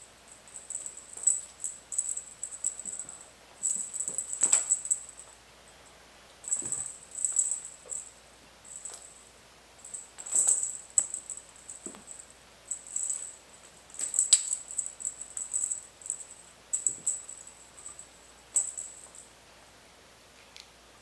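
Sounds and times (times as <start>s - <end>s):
toy bird jingling: 0.4s - 5.2s, 9.9s - 19.2s
soft thumps: 6.5s - 7.6s.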